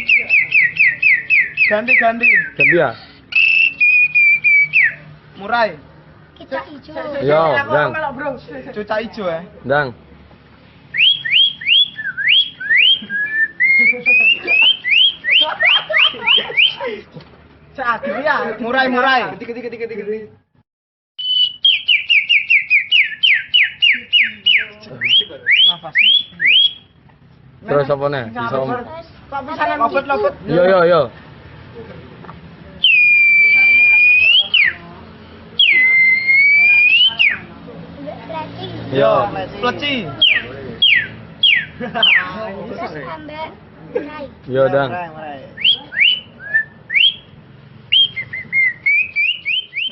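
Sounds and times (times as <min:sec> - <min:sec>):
person whistling birdsong: 0:00.0 - 0:05.0, 0:21.2 - 0:26.9, 0:47.9 - 0:49.9
person whistling bird call: 0:03.3 - 0:05.0, 0:11.0 - 0:15.4, 0:21.2 - 0:26.8.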